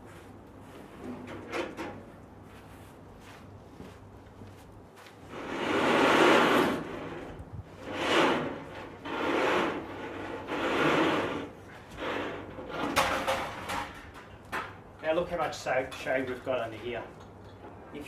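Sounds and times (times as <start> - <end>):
curtain sliding along wire ropes: 7.8 - 13.0.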